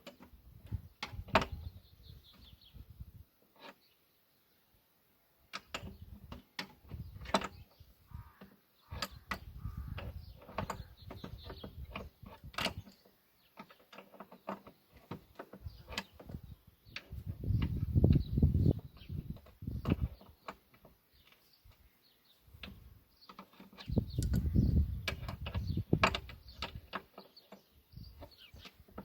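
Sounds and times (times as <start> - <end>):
low rumbling handling noise: 5.7 - 13.0, 14.2 - 21.8, 22.5 - 29.0.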